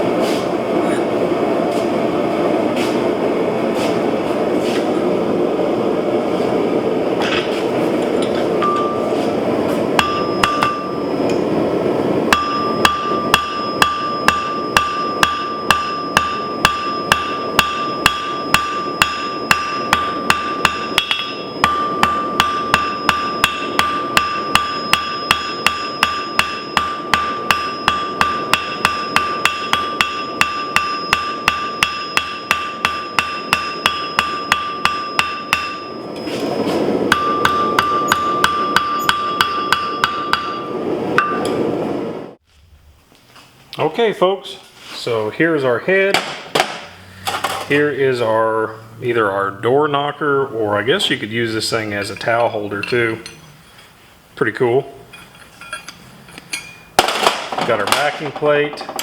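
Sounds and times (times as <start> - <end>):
hammer striking hot steel on anvil: 7.2 - 11.6, 12.3 - 41.7, 55.1 - 59.0
anvil ringing: 8.2 - 9.2, 10.0 - 11.5, 12.3 - 41.6, 55.1 - 59.0.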